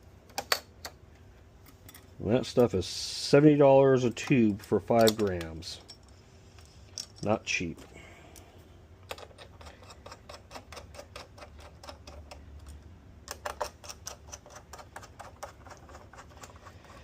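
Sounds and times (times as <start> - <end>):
clicks and taps of small parts: 9.0 - 16.7.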